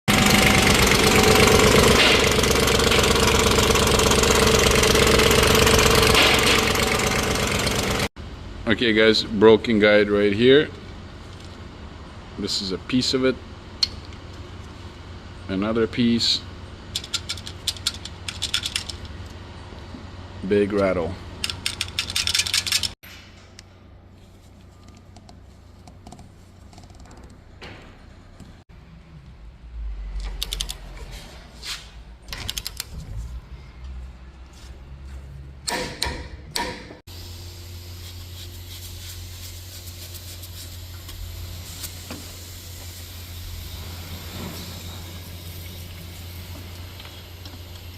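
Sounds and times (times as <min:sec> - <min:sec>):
engine timing chain rattle: 0:00.1 - 0:08.1, 0:16.9 - 0:19.2, 0:21.4 - 0:23.0
engine running: 0:00.1 - 0:08.6, 0:37.1 - 0:47.9.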